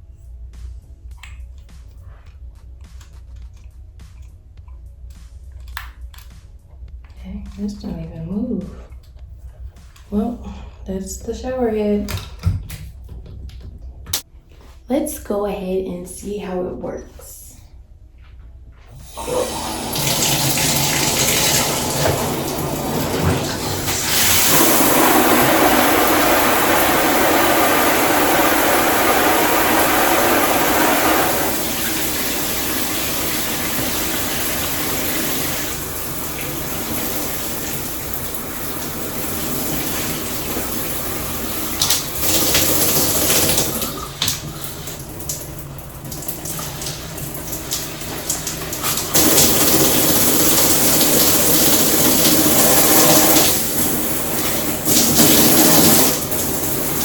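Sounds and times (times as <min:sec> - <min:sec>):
shower spray hissing: 0:19.0 - 0:45.4, 0:46.2 - 0:57.0.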